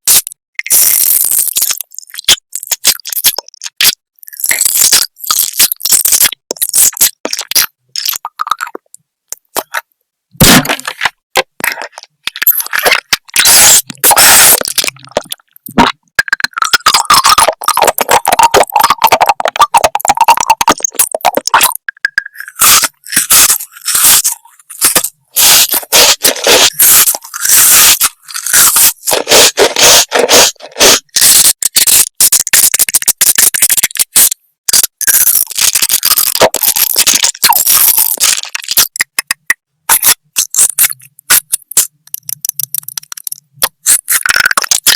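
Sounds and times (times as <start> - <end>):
chewing crunchy food: 10.4 - 31.6.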